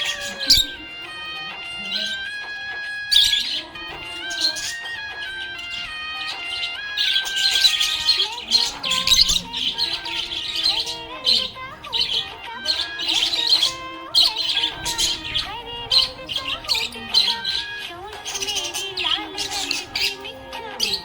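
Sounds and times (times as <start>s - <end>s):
budgerigar chirping and warbling: 0.0s - 21.0s
instrumental melody: 0.0s - 21.0s.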